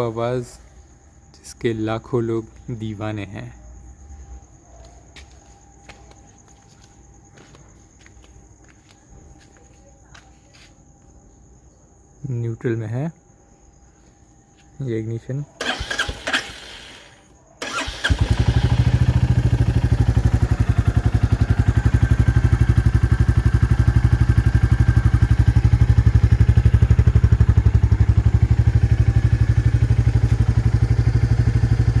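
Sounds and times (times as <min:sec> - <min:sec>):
motorcycle engine starting and idling: 0:15.6 - 0:32.0.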